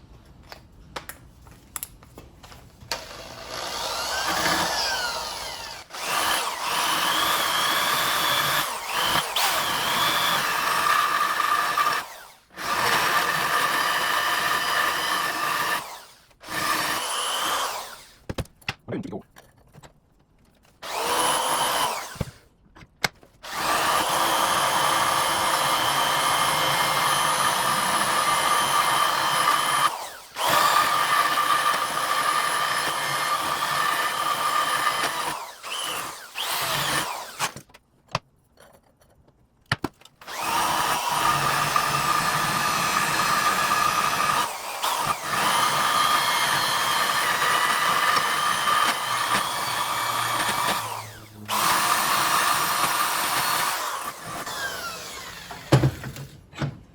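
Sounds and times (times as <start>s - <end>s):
electric drill grinding metal: 2.9s - 18.3s, 20.8s - 22.5s, 23.4s - 37.7s, 40.2s - 56.3s.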